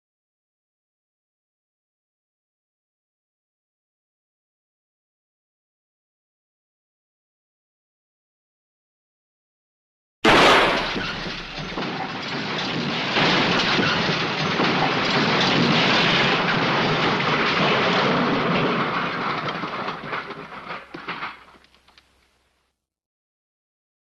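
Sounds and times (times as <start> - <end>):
heavy crash impact: 10.3 - 21.6
tumbling debris rumbling: 10.3 - 22.5.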